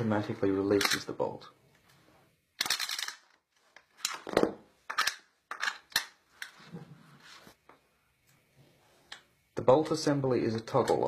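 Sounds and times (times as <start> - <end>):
sharp plastic snaps and clicks: 4.9 - 6.5.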